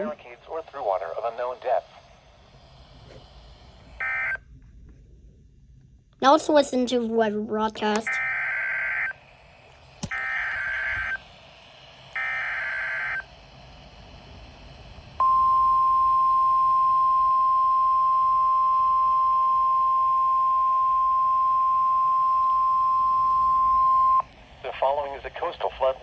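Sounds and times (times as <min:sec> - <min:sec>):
steady single-pitch alarm tone: 0:03.9 - 0:04.4, 0:08.0 - 0:09.3, 0:10.0 - 0:11.4, 0:12.1 - 0:13.4, 0:15.2 - 0:24.3.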